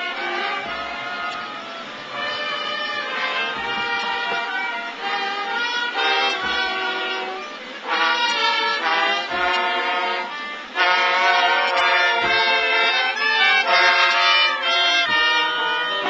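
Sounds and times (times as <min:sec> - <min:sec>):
music with pitched instruments: 0:00.0 - 0:16.0.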